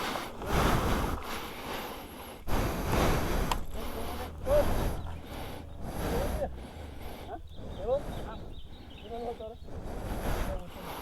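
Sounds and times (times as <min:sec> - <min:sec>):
wind buffeting on microphone: 0:00.0 - 0:11.0
motorcycle engine: 0:02.8 - 0:09.7.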